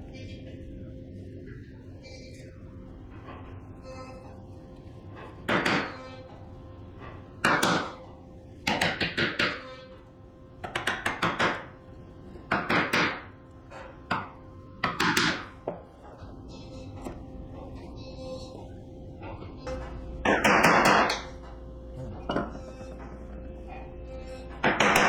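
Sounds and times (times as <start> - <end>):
chisel strikes on wood: 10.6 - 11.7, 12.5 - 13.2, 14.1 - 15.5, 24.6 - 25.0.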